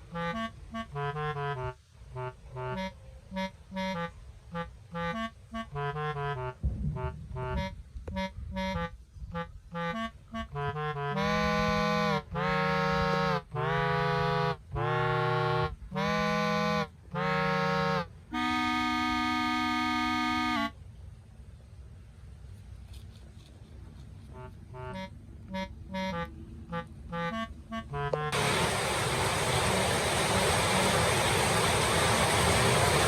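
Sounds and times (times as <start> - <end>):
reedy instrumental music: 0.0 - 20.8, 24.3 - 28.5.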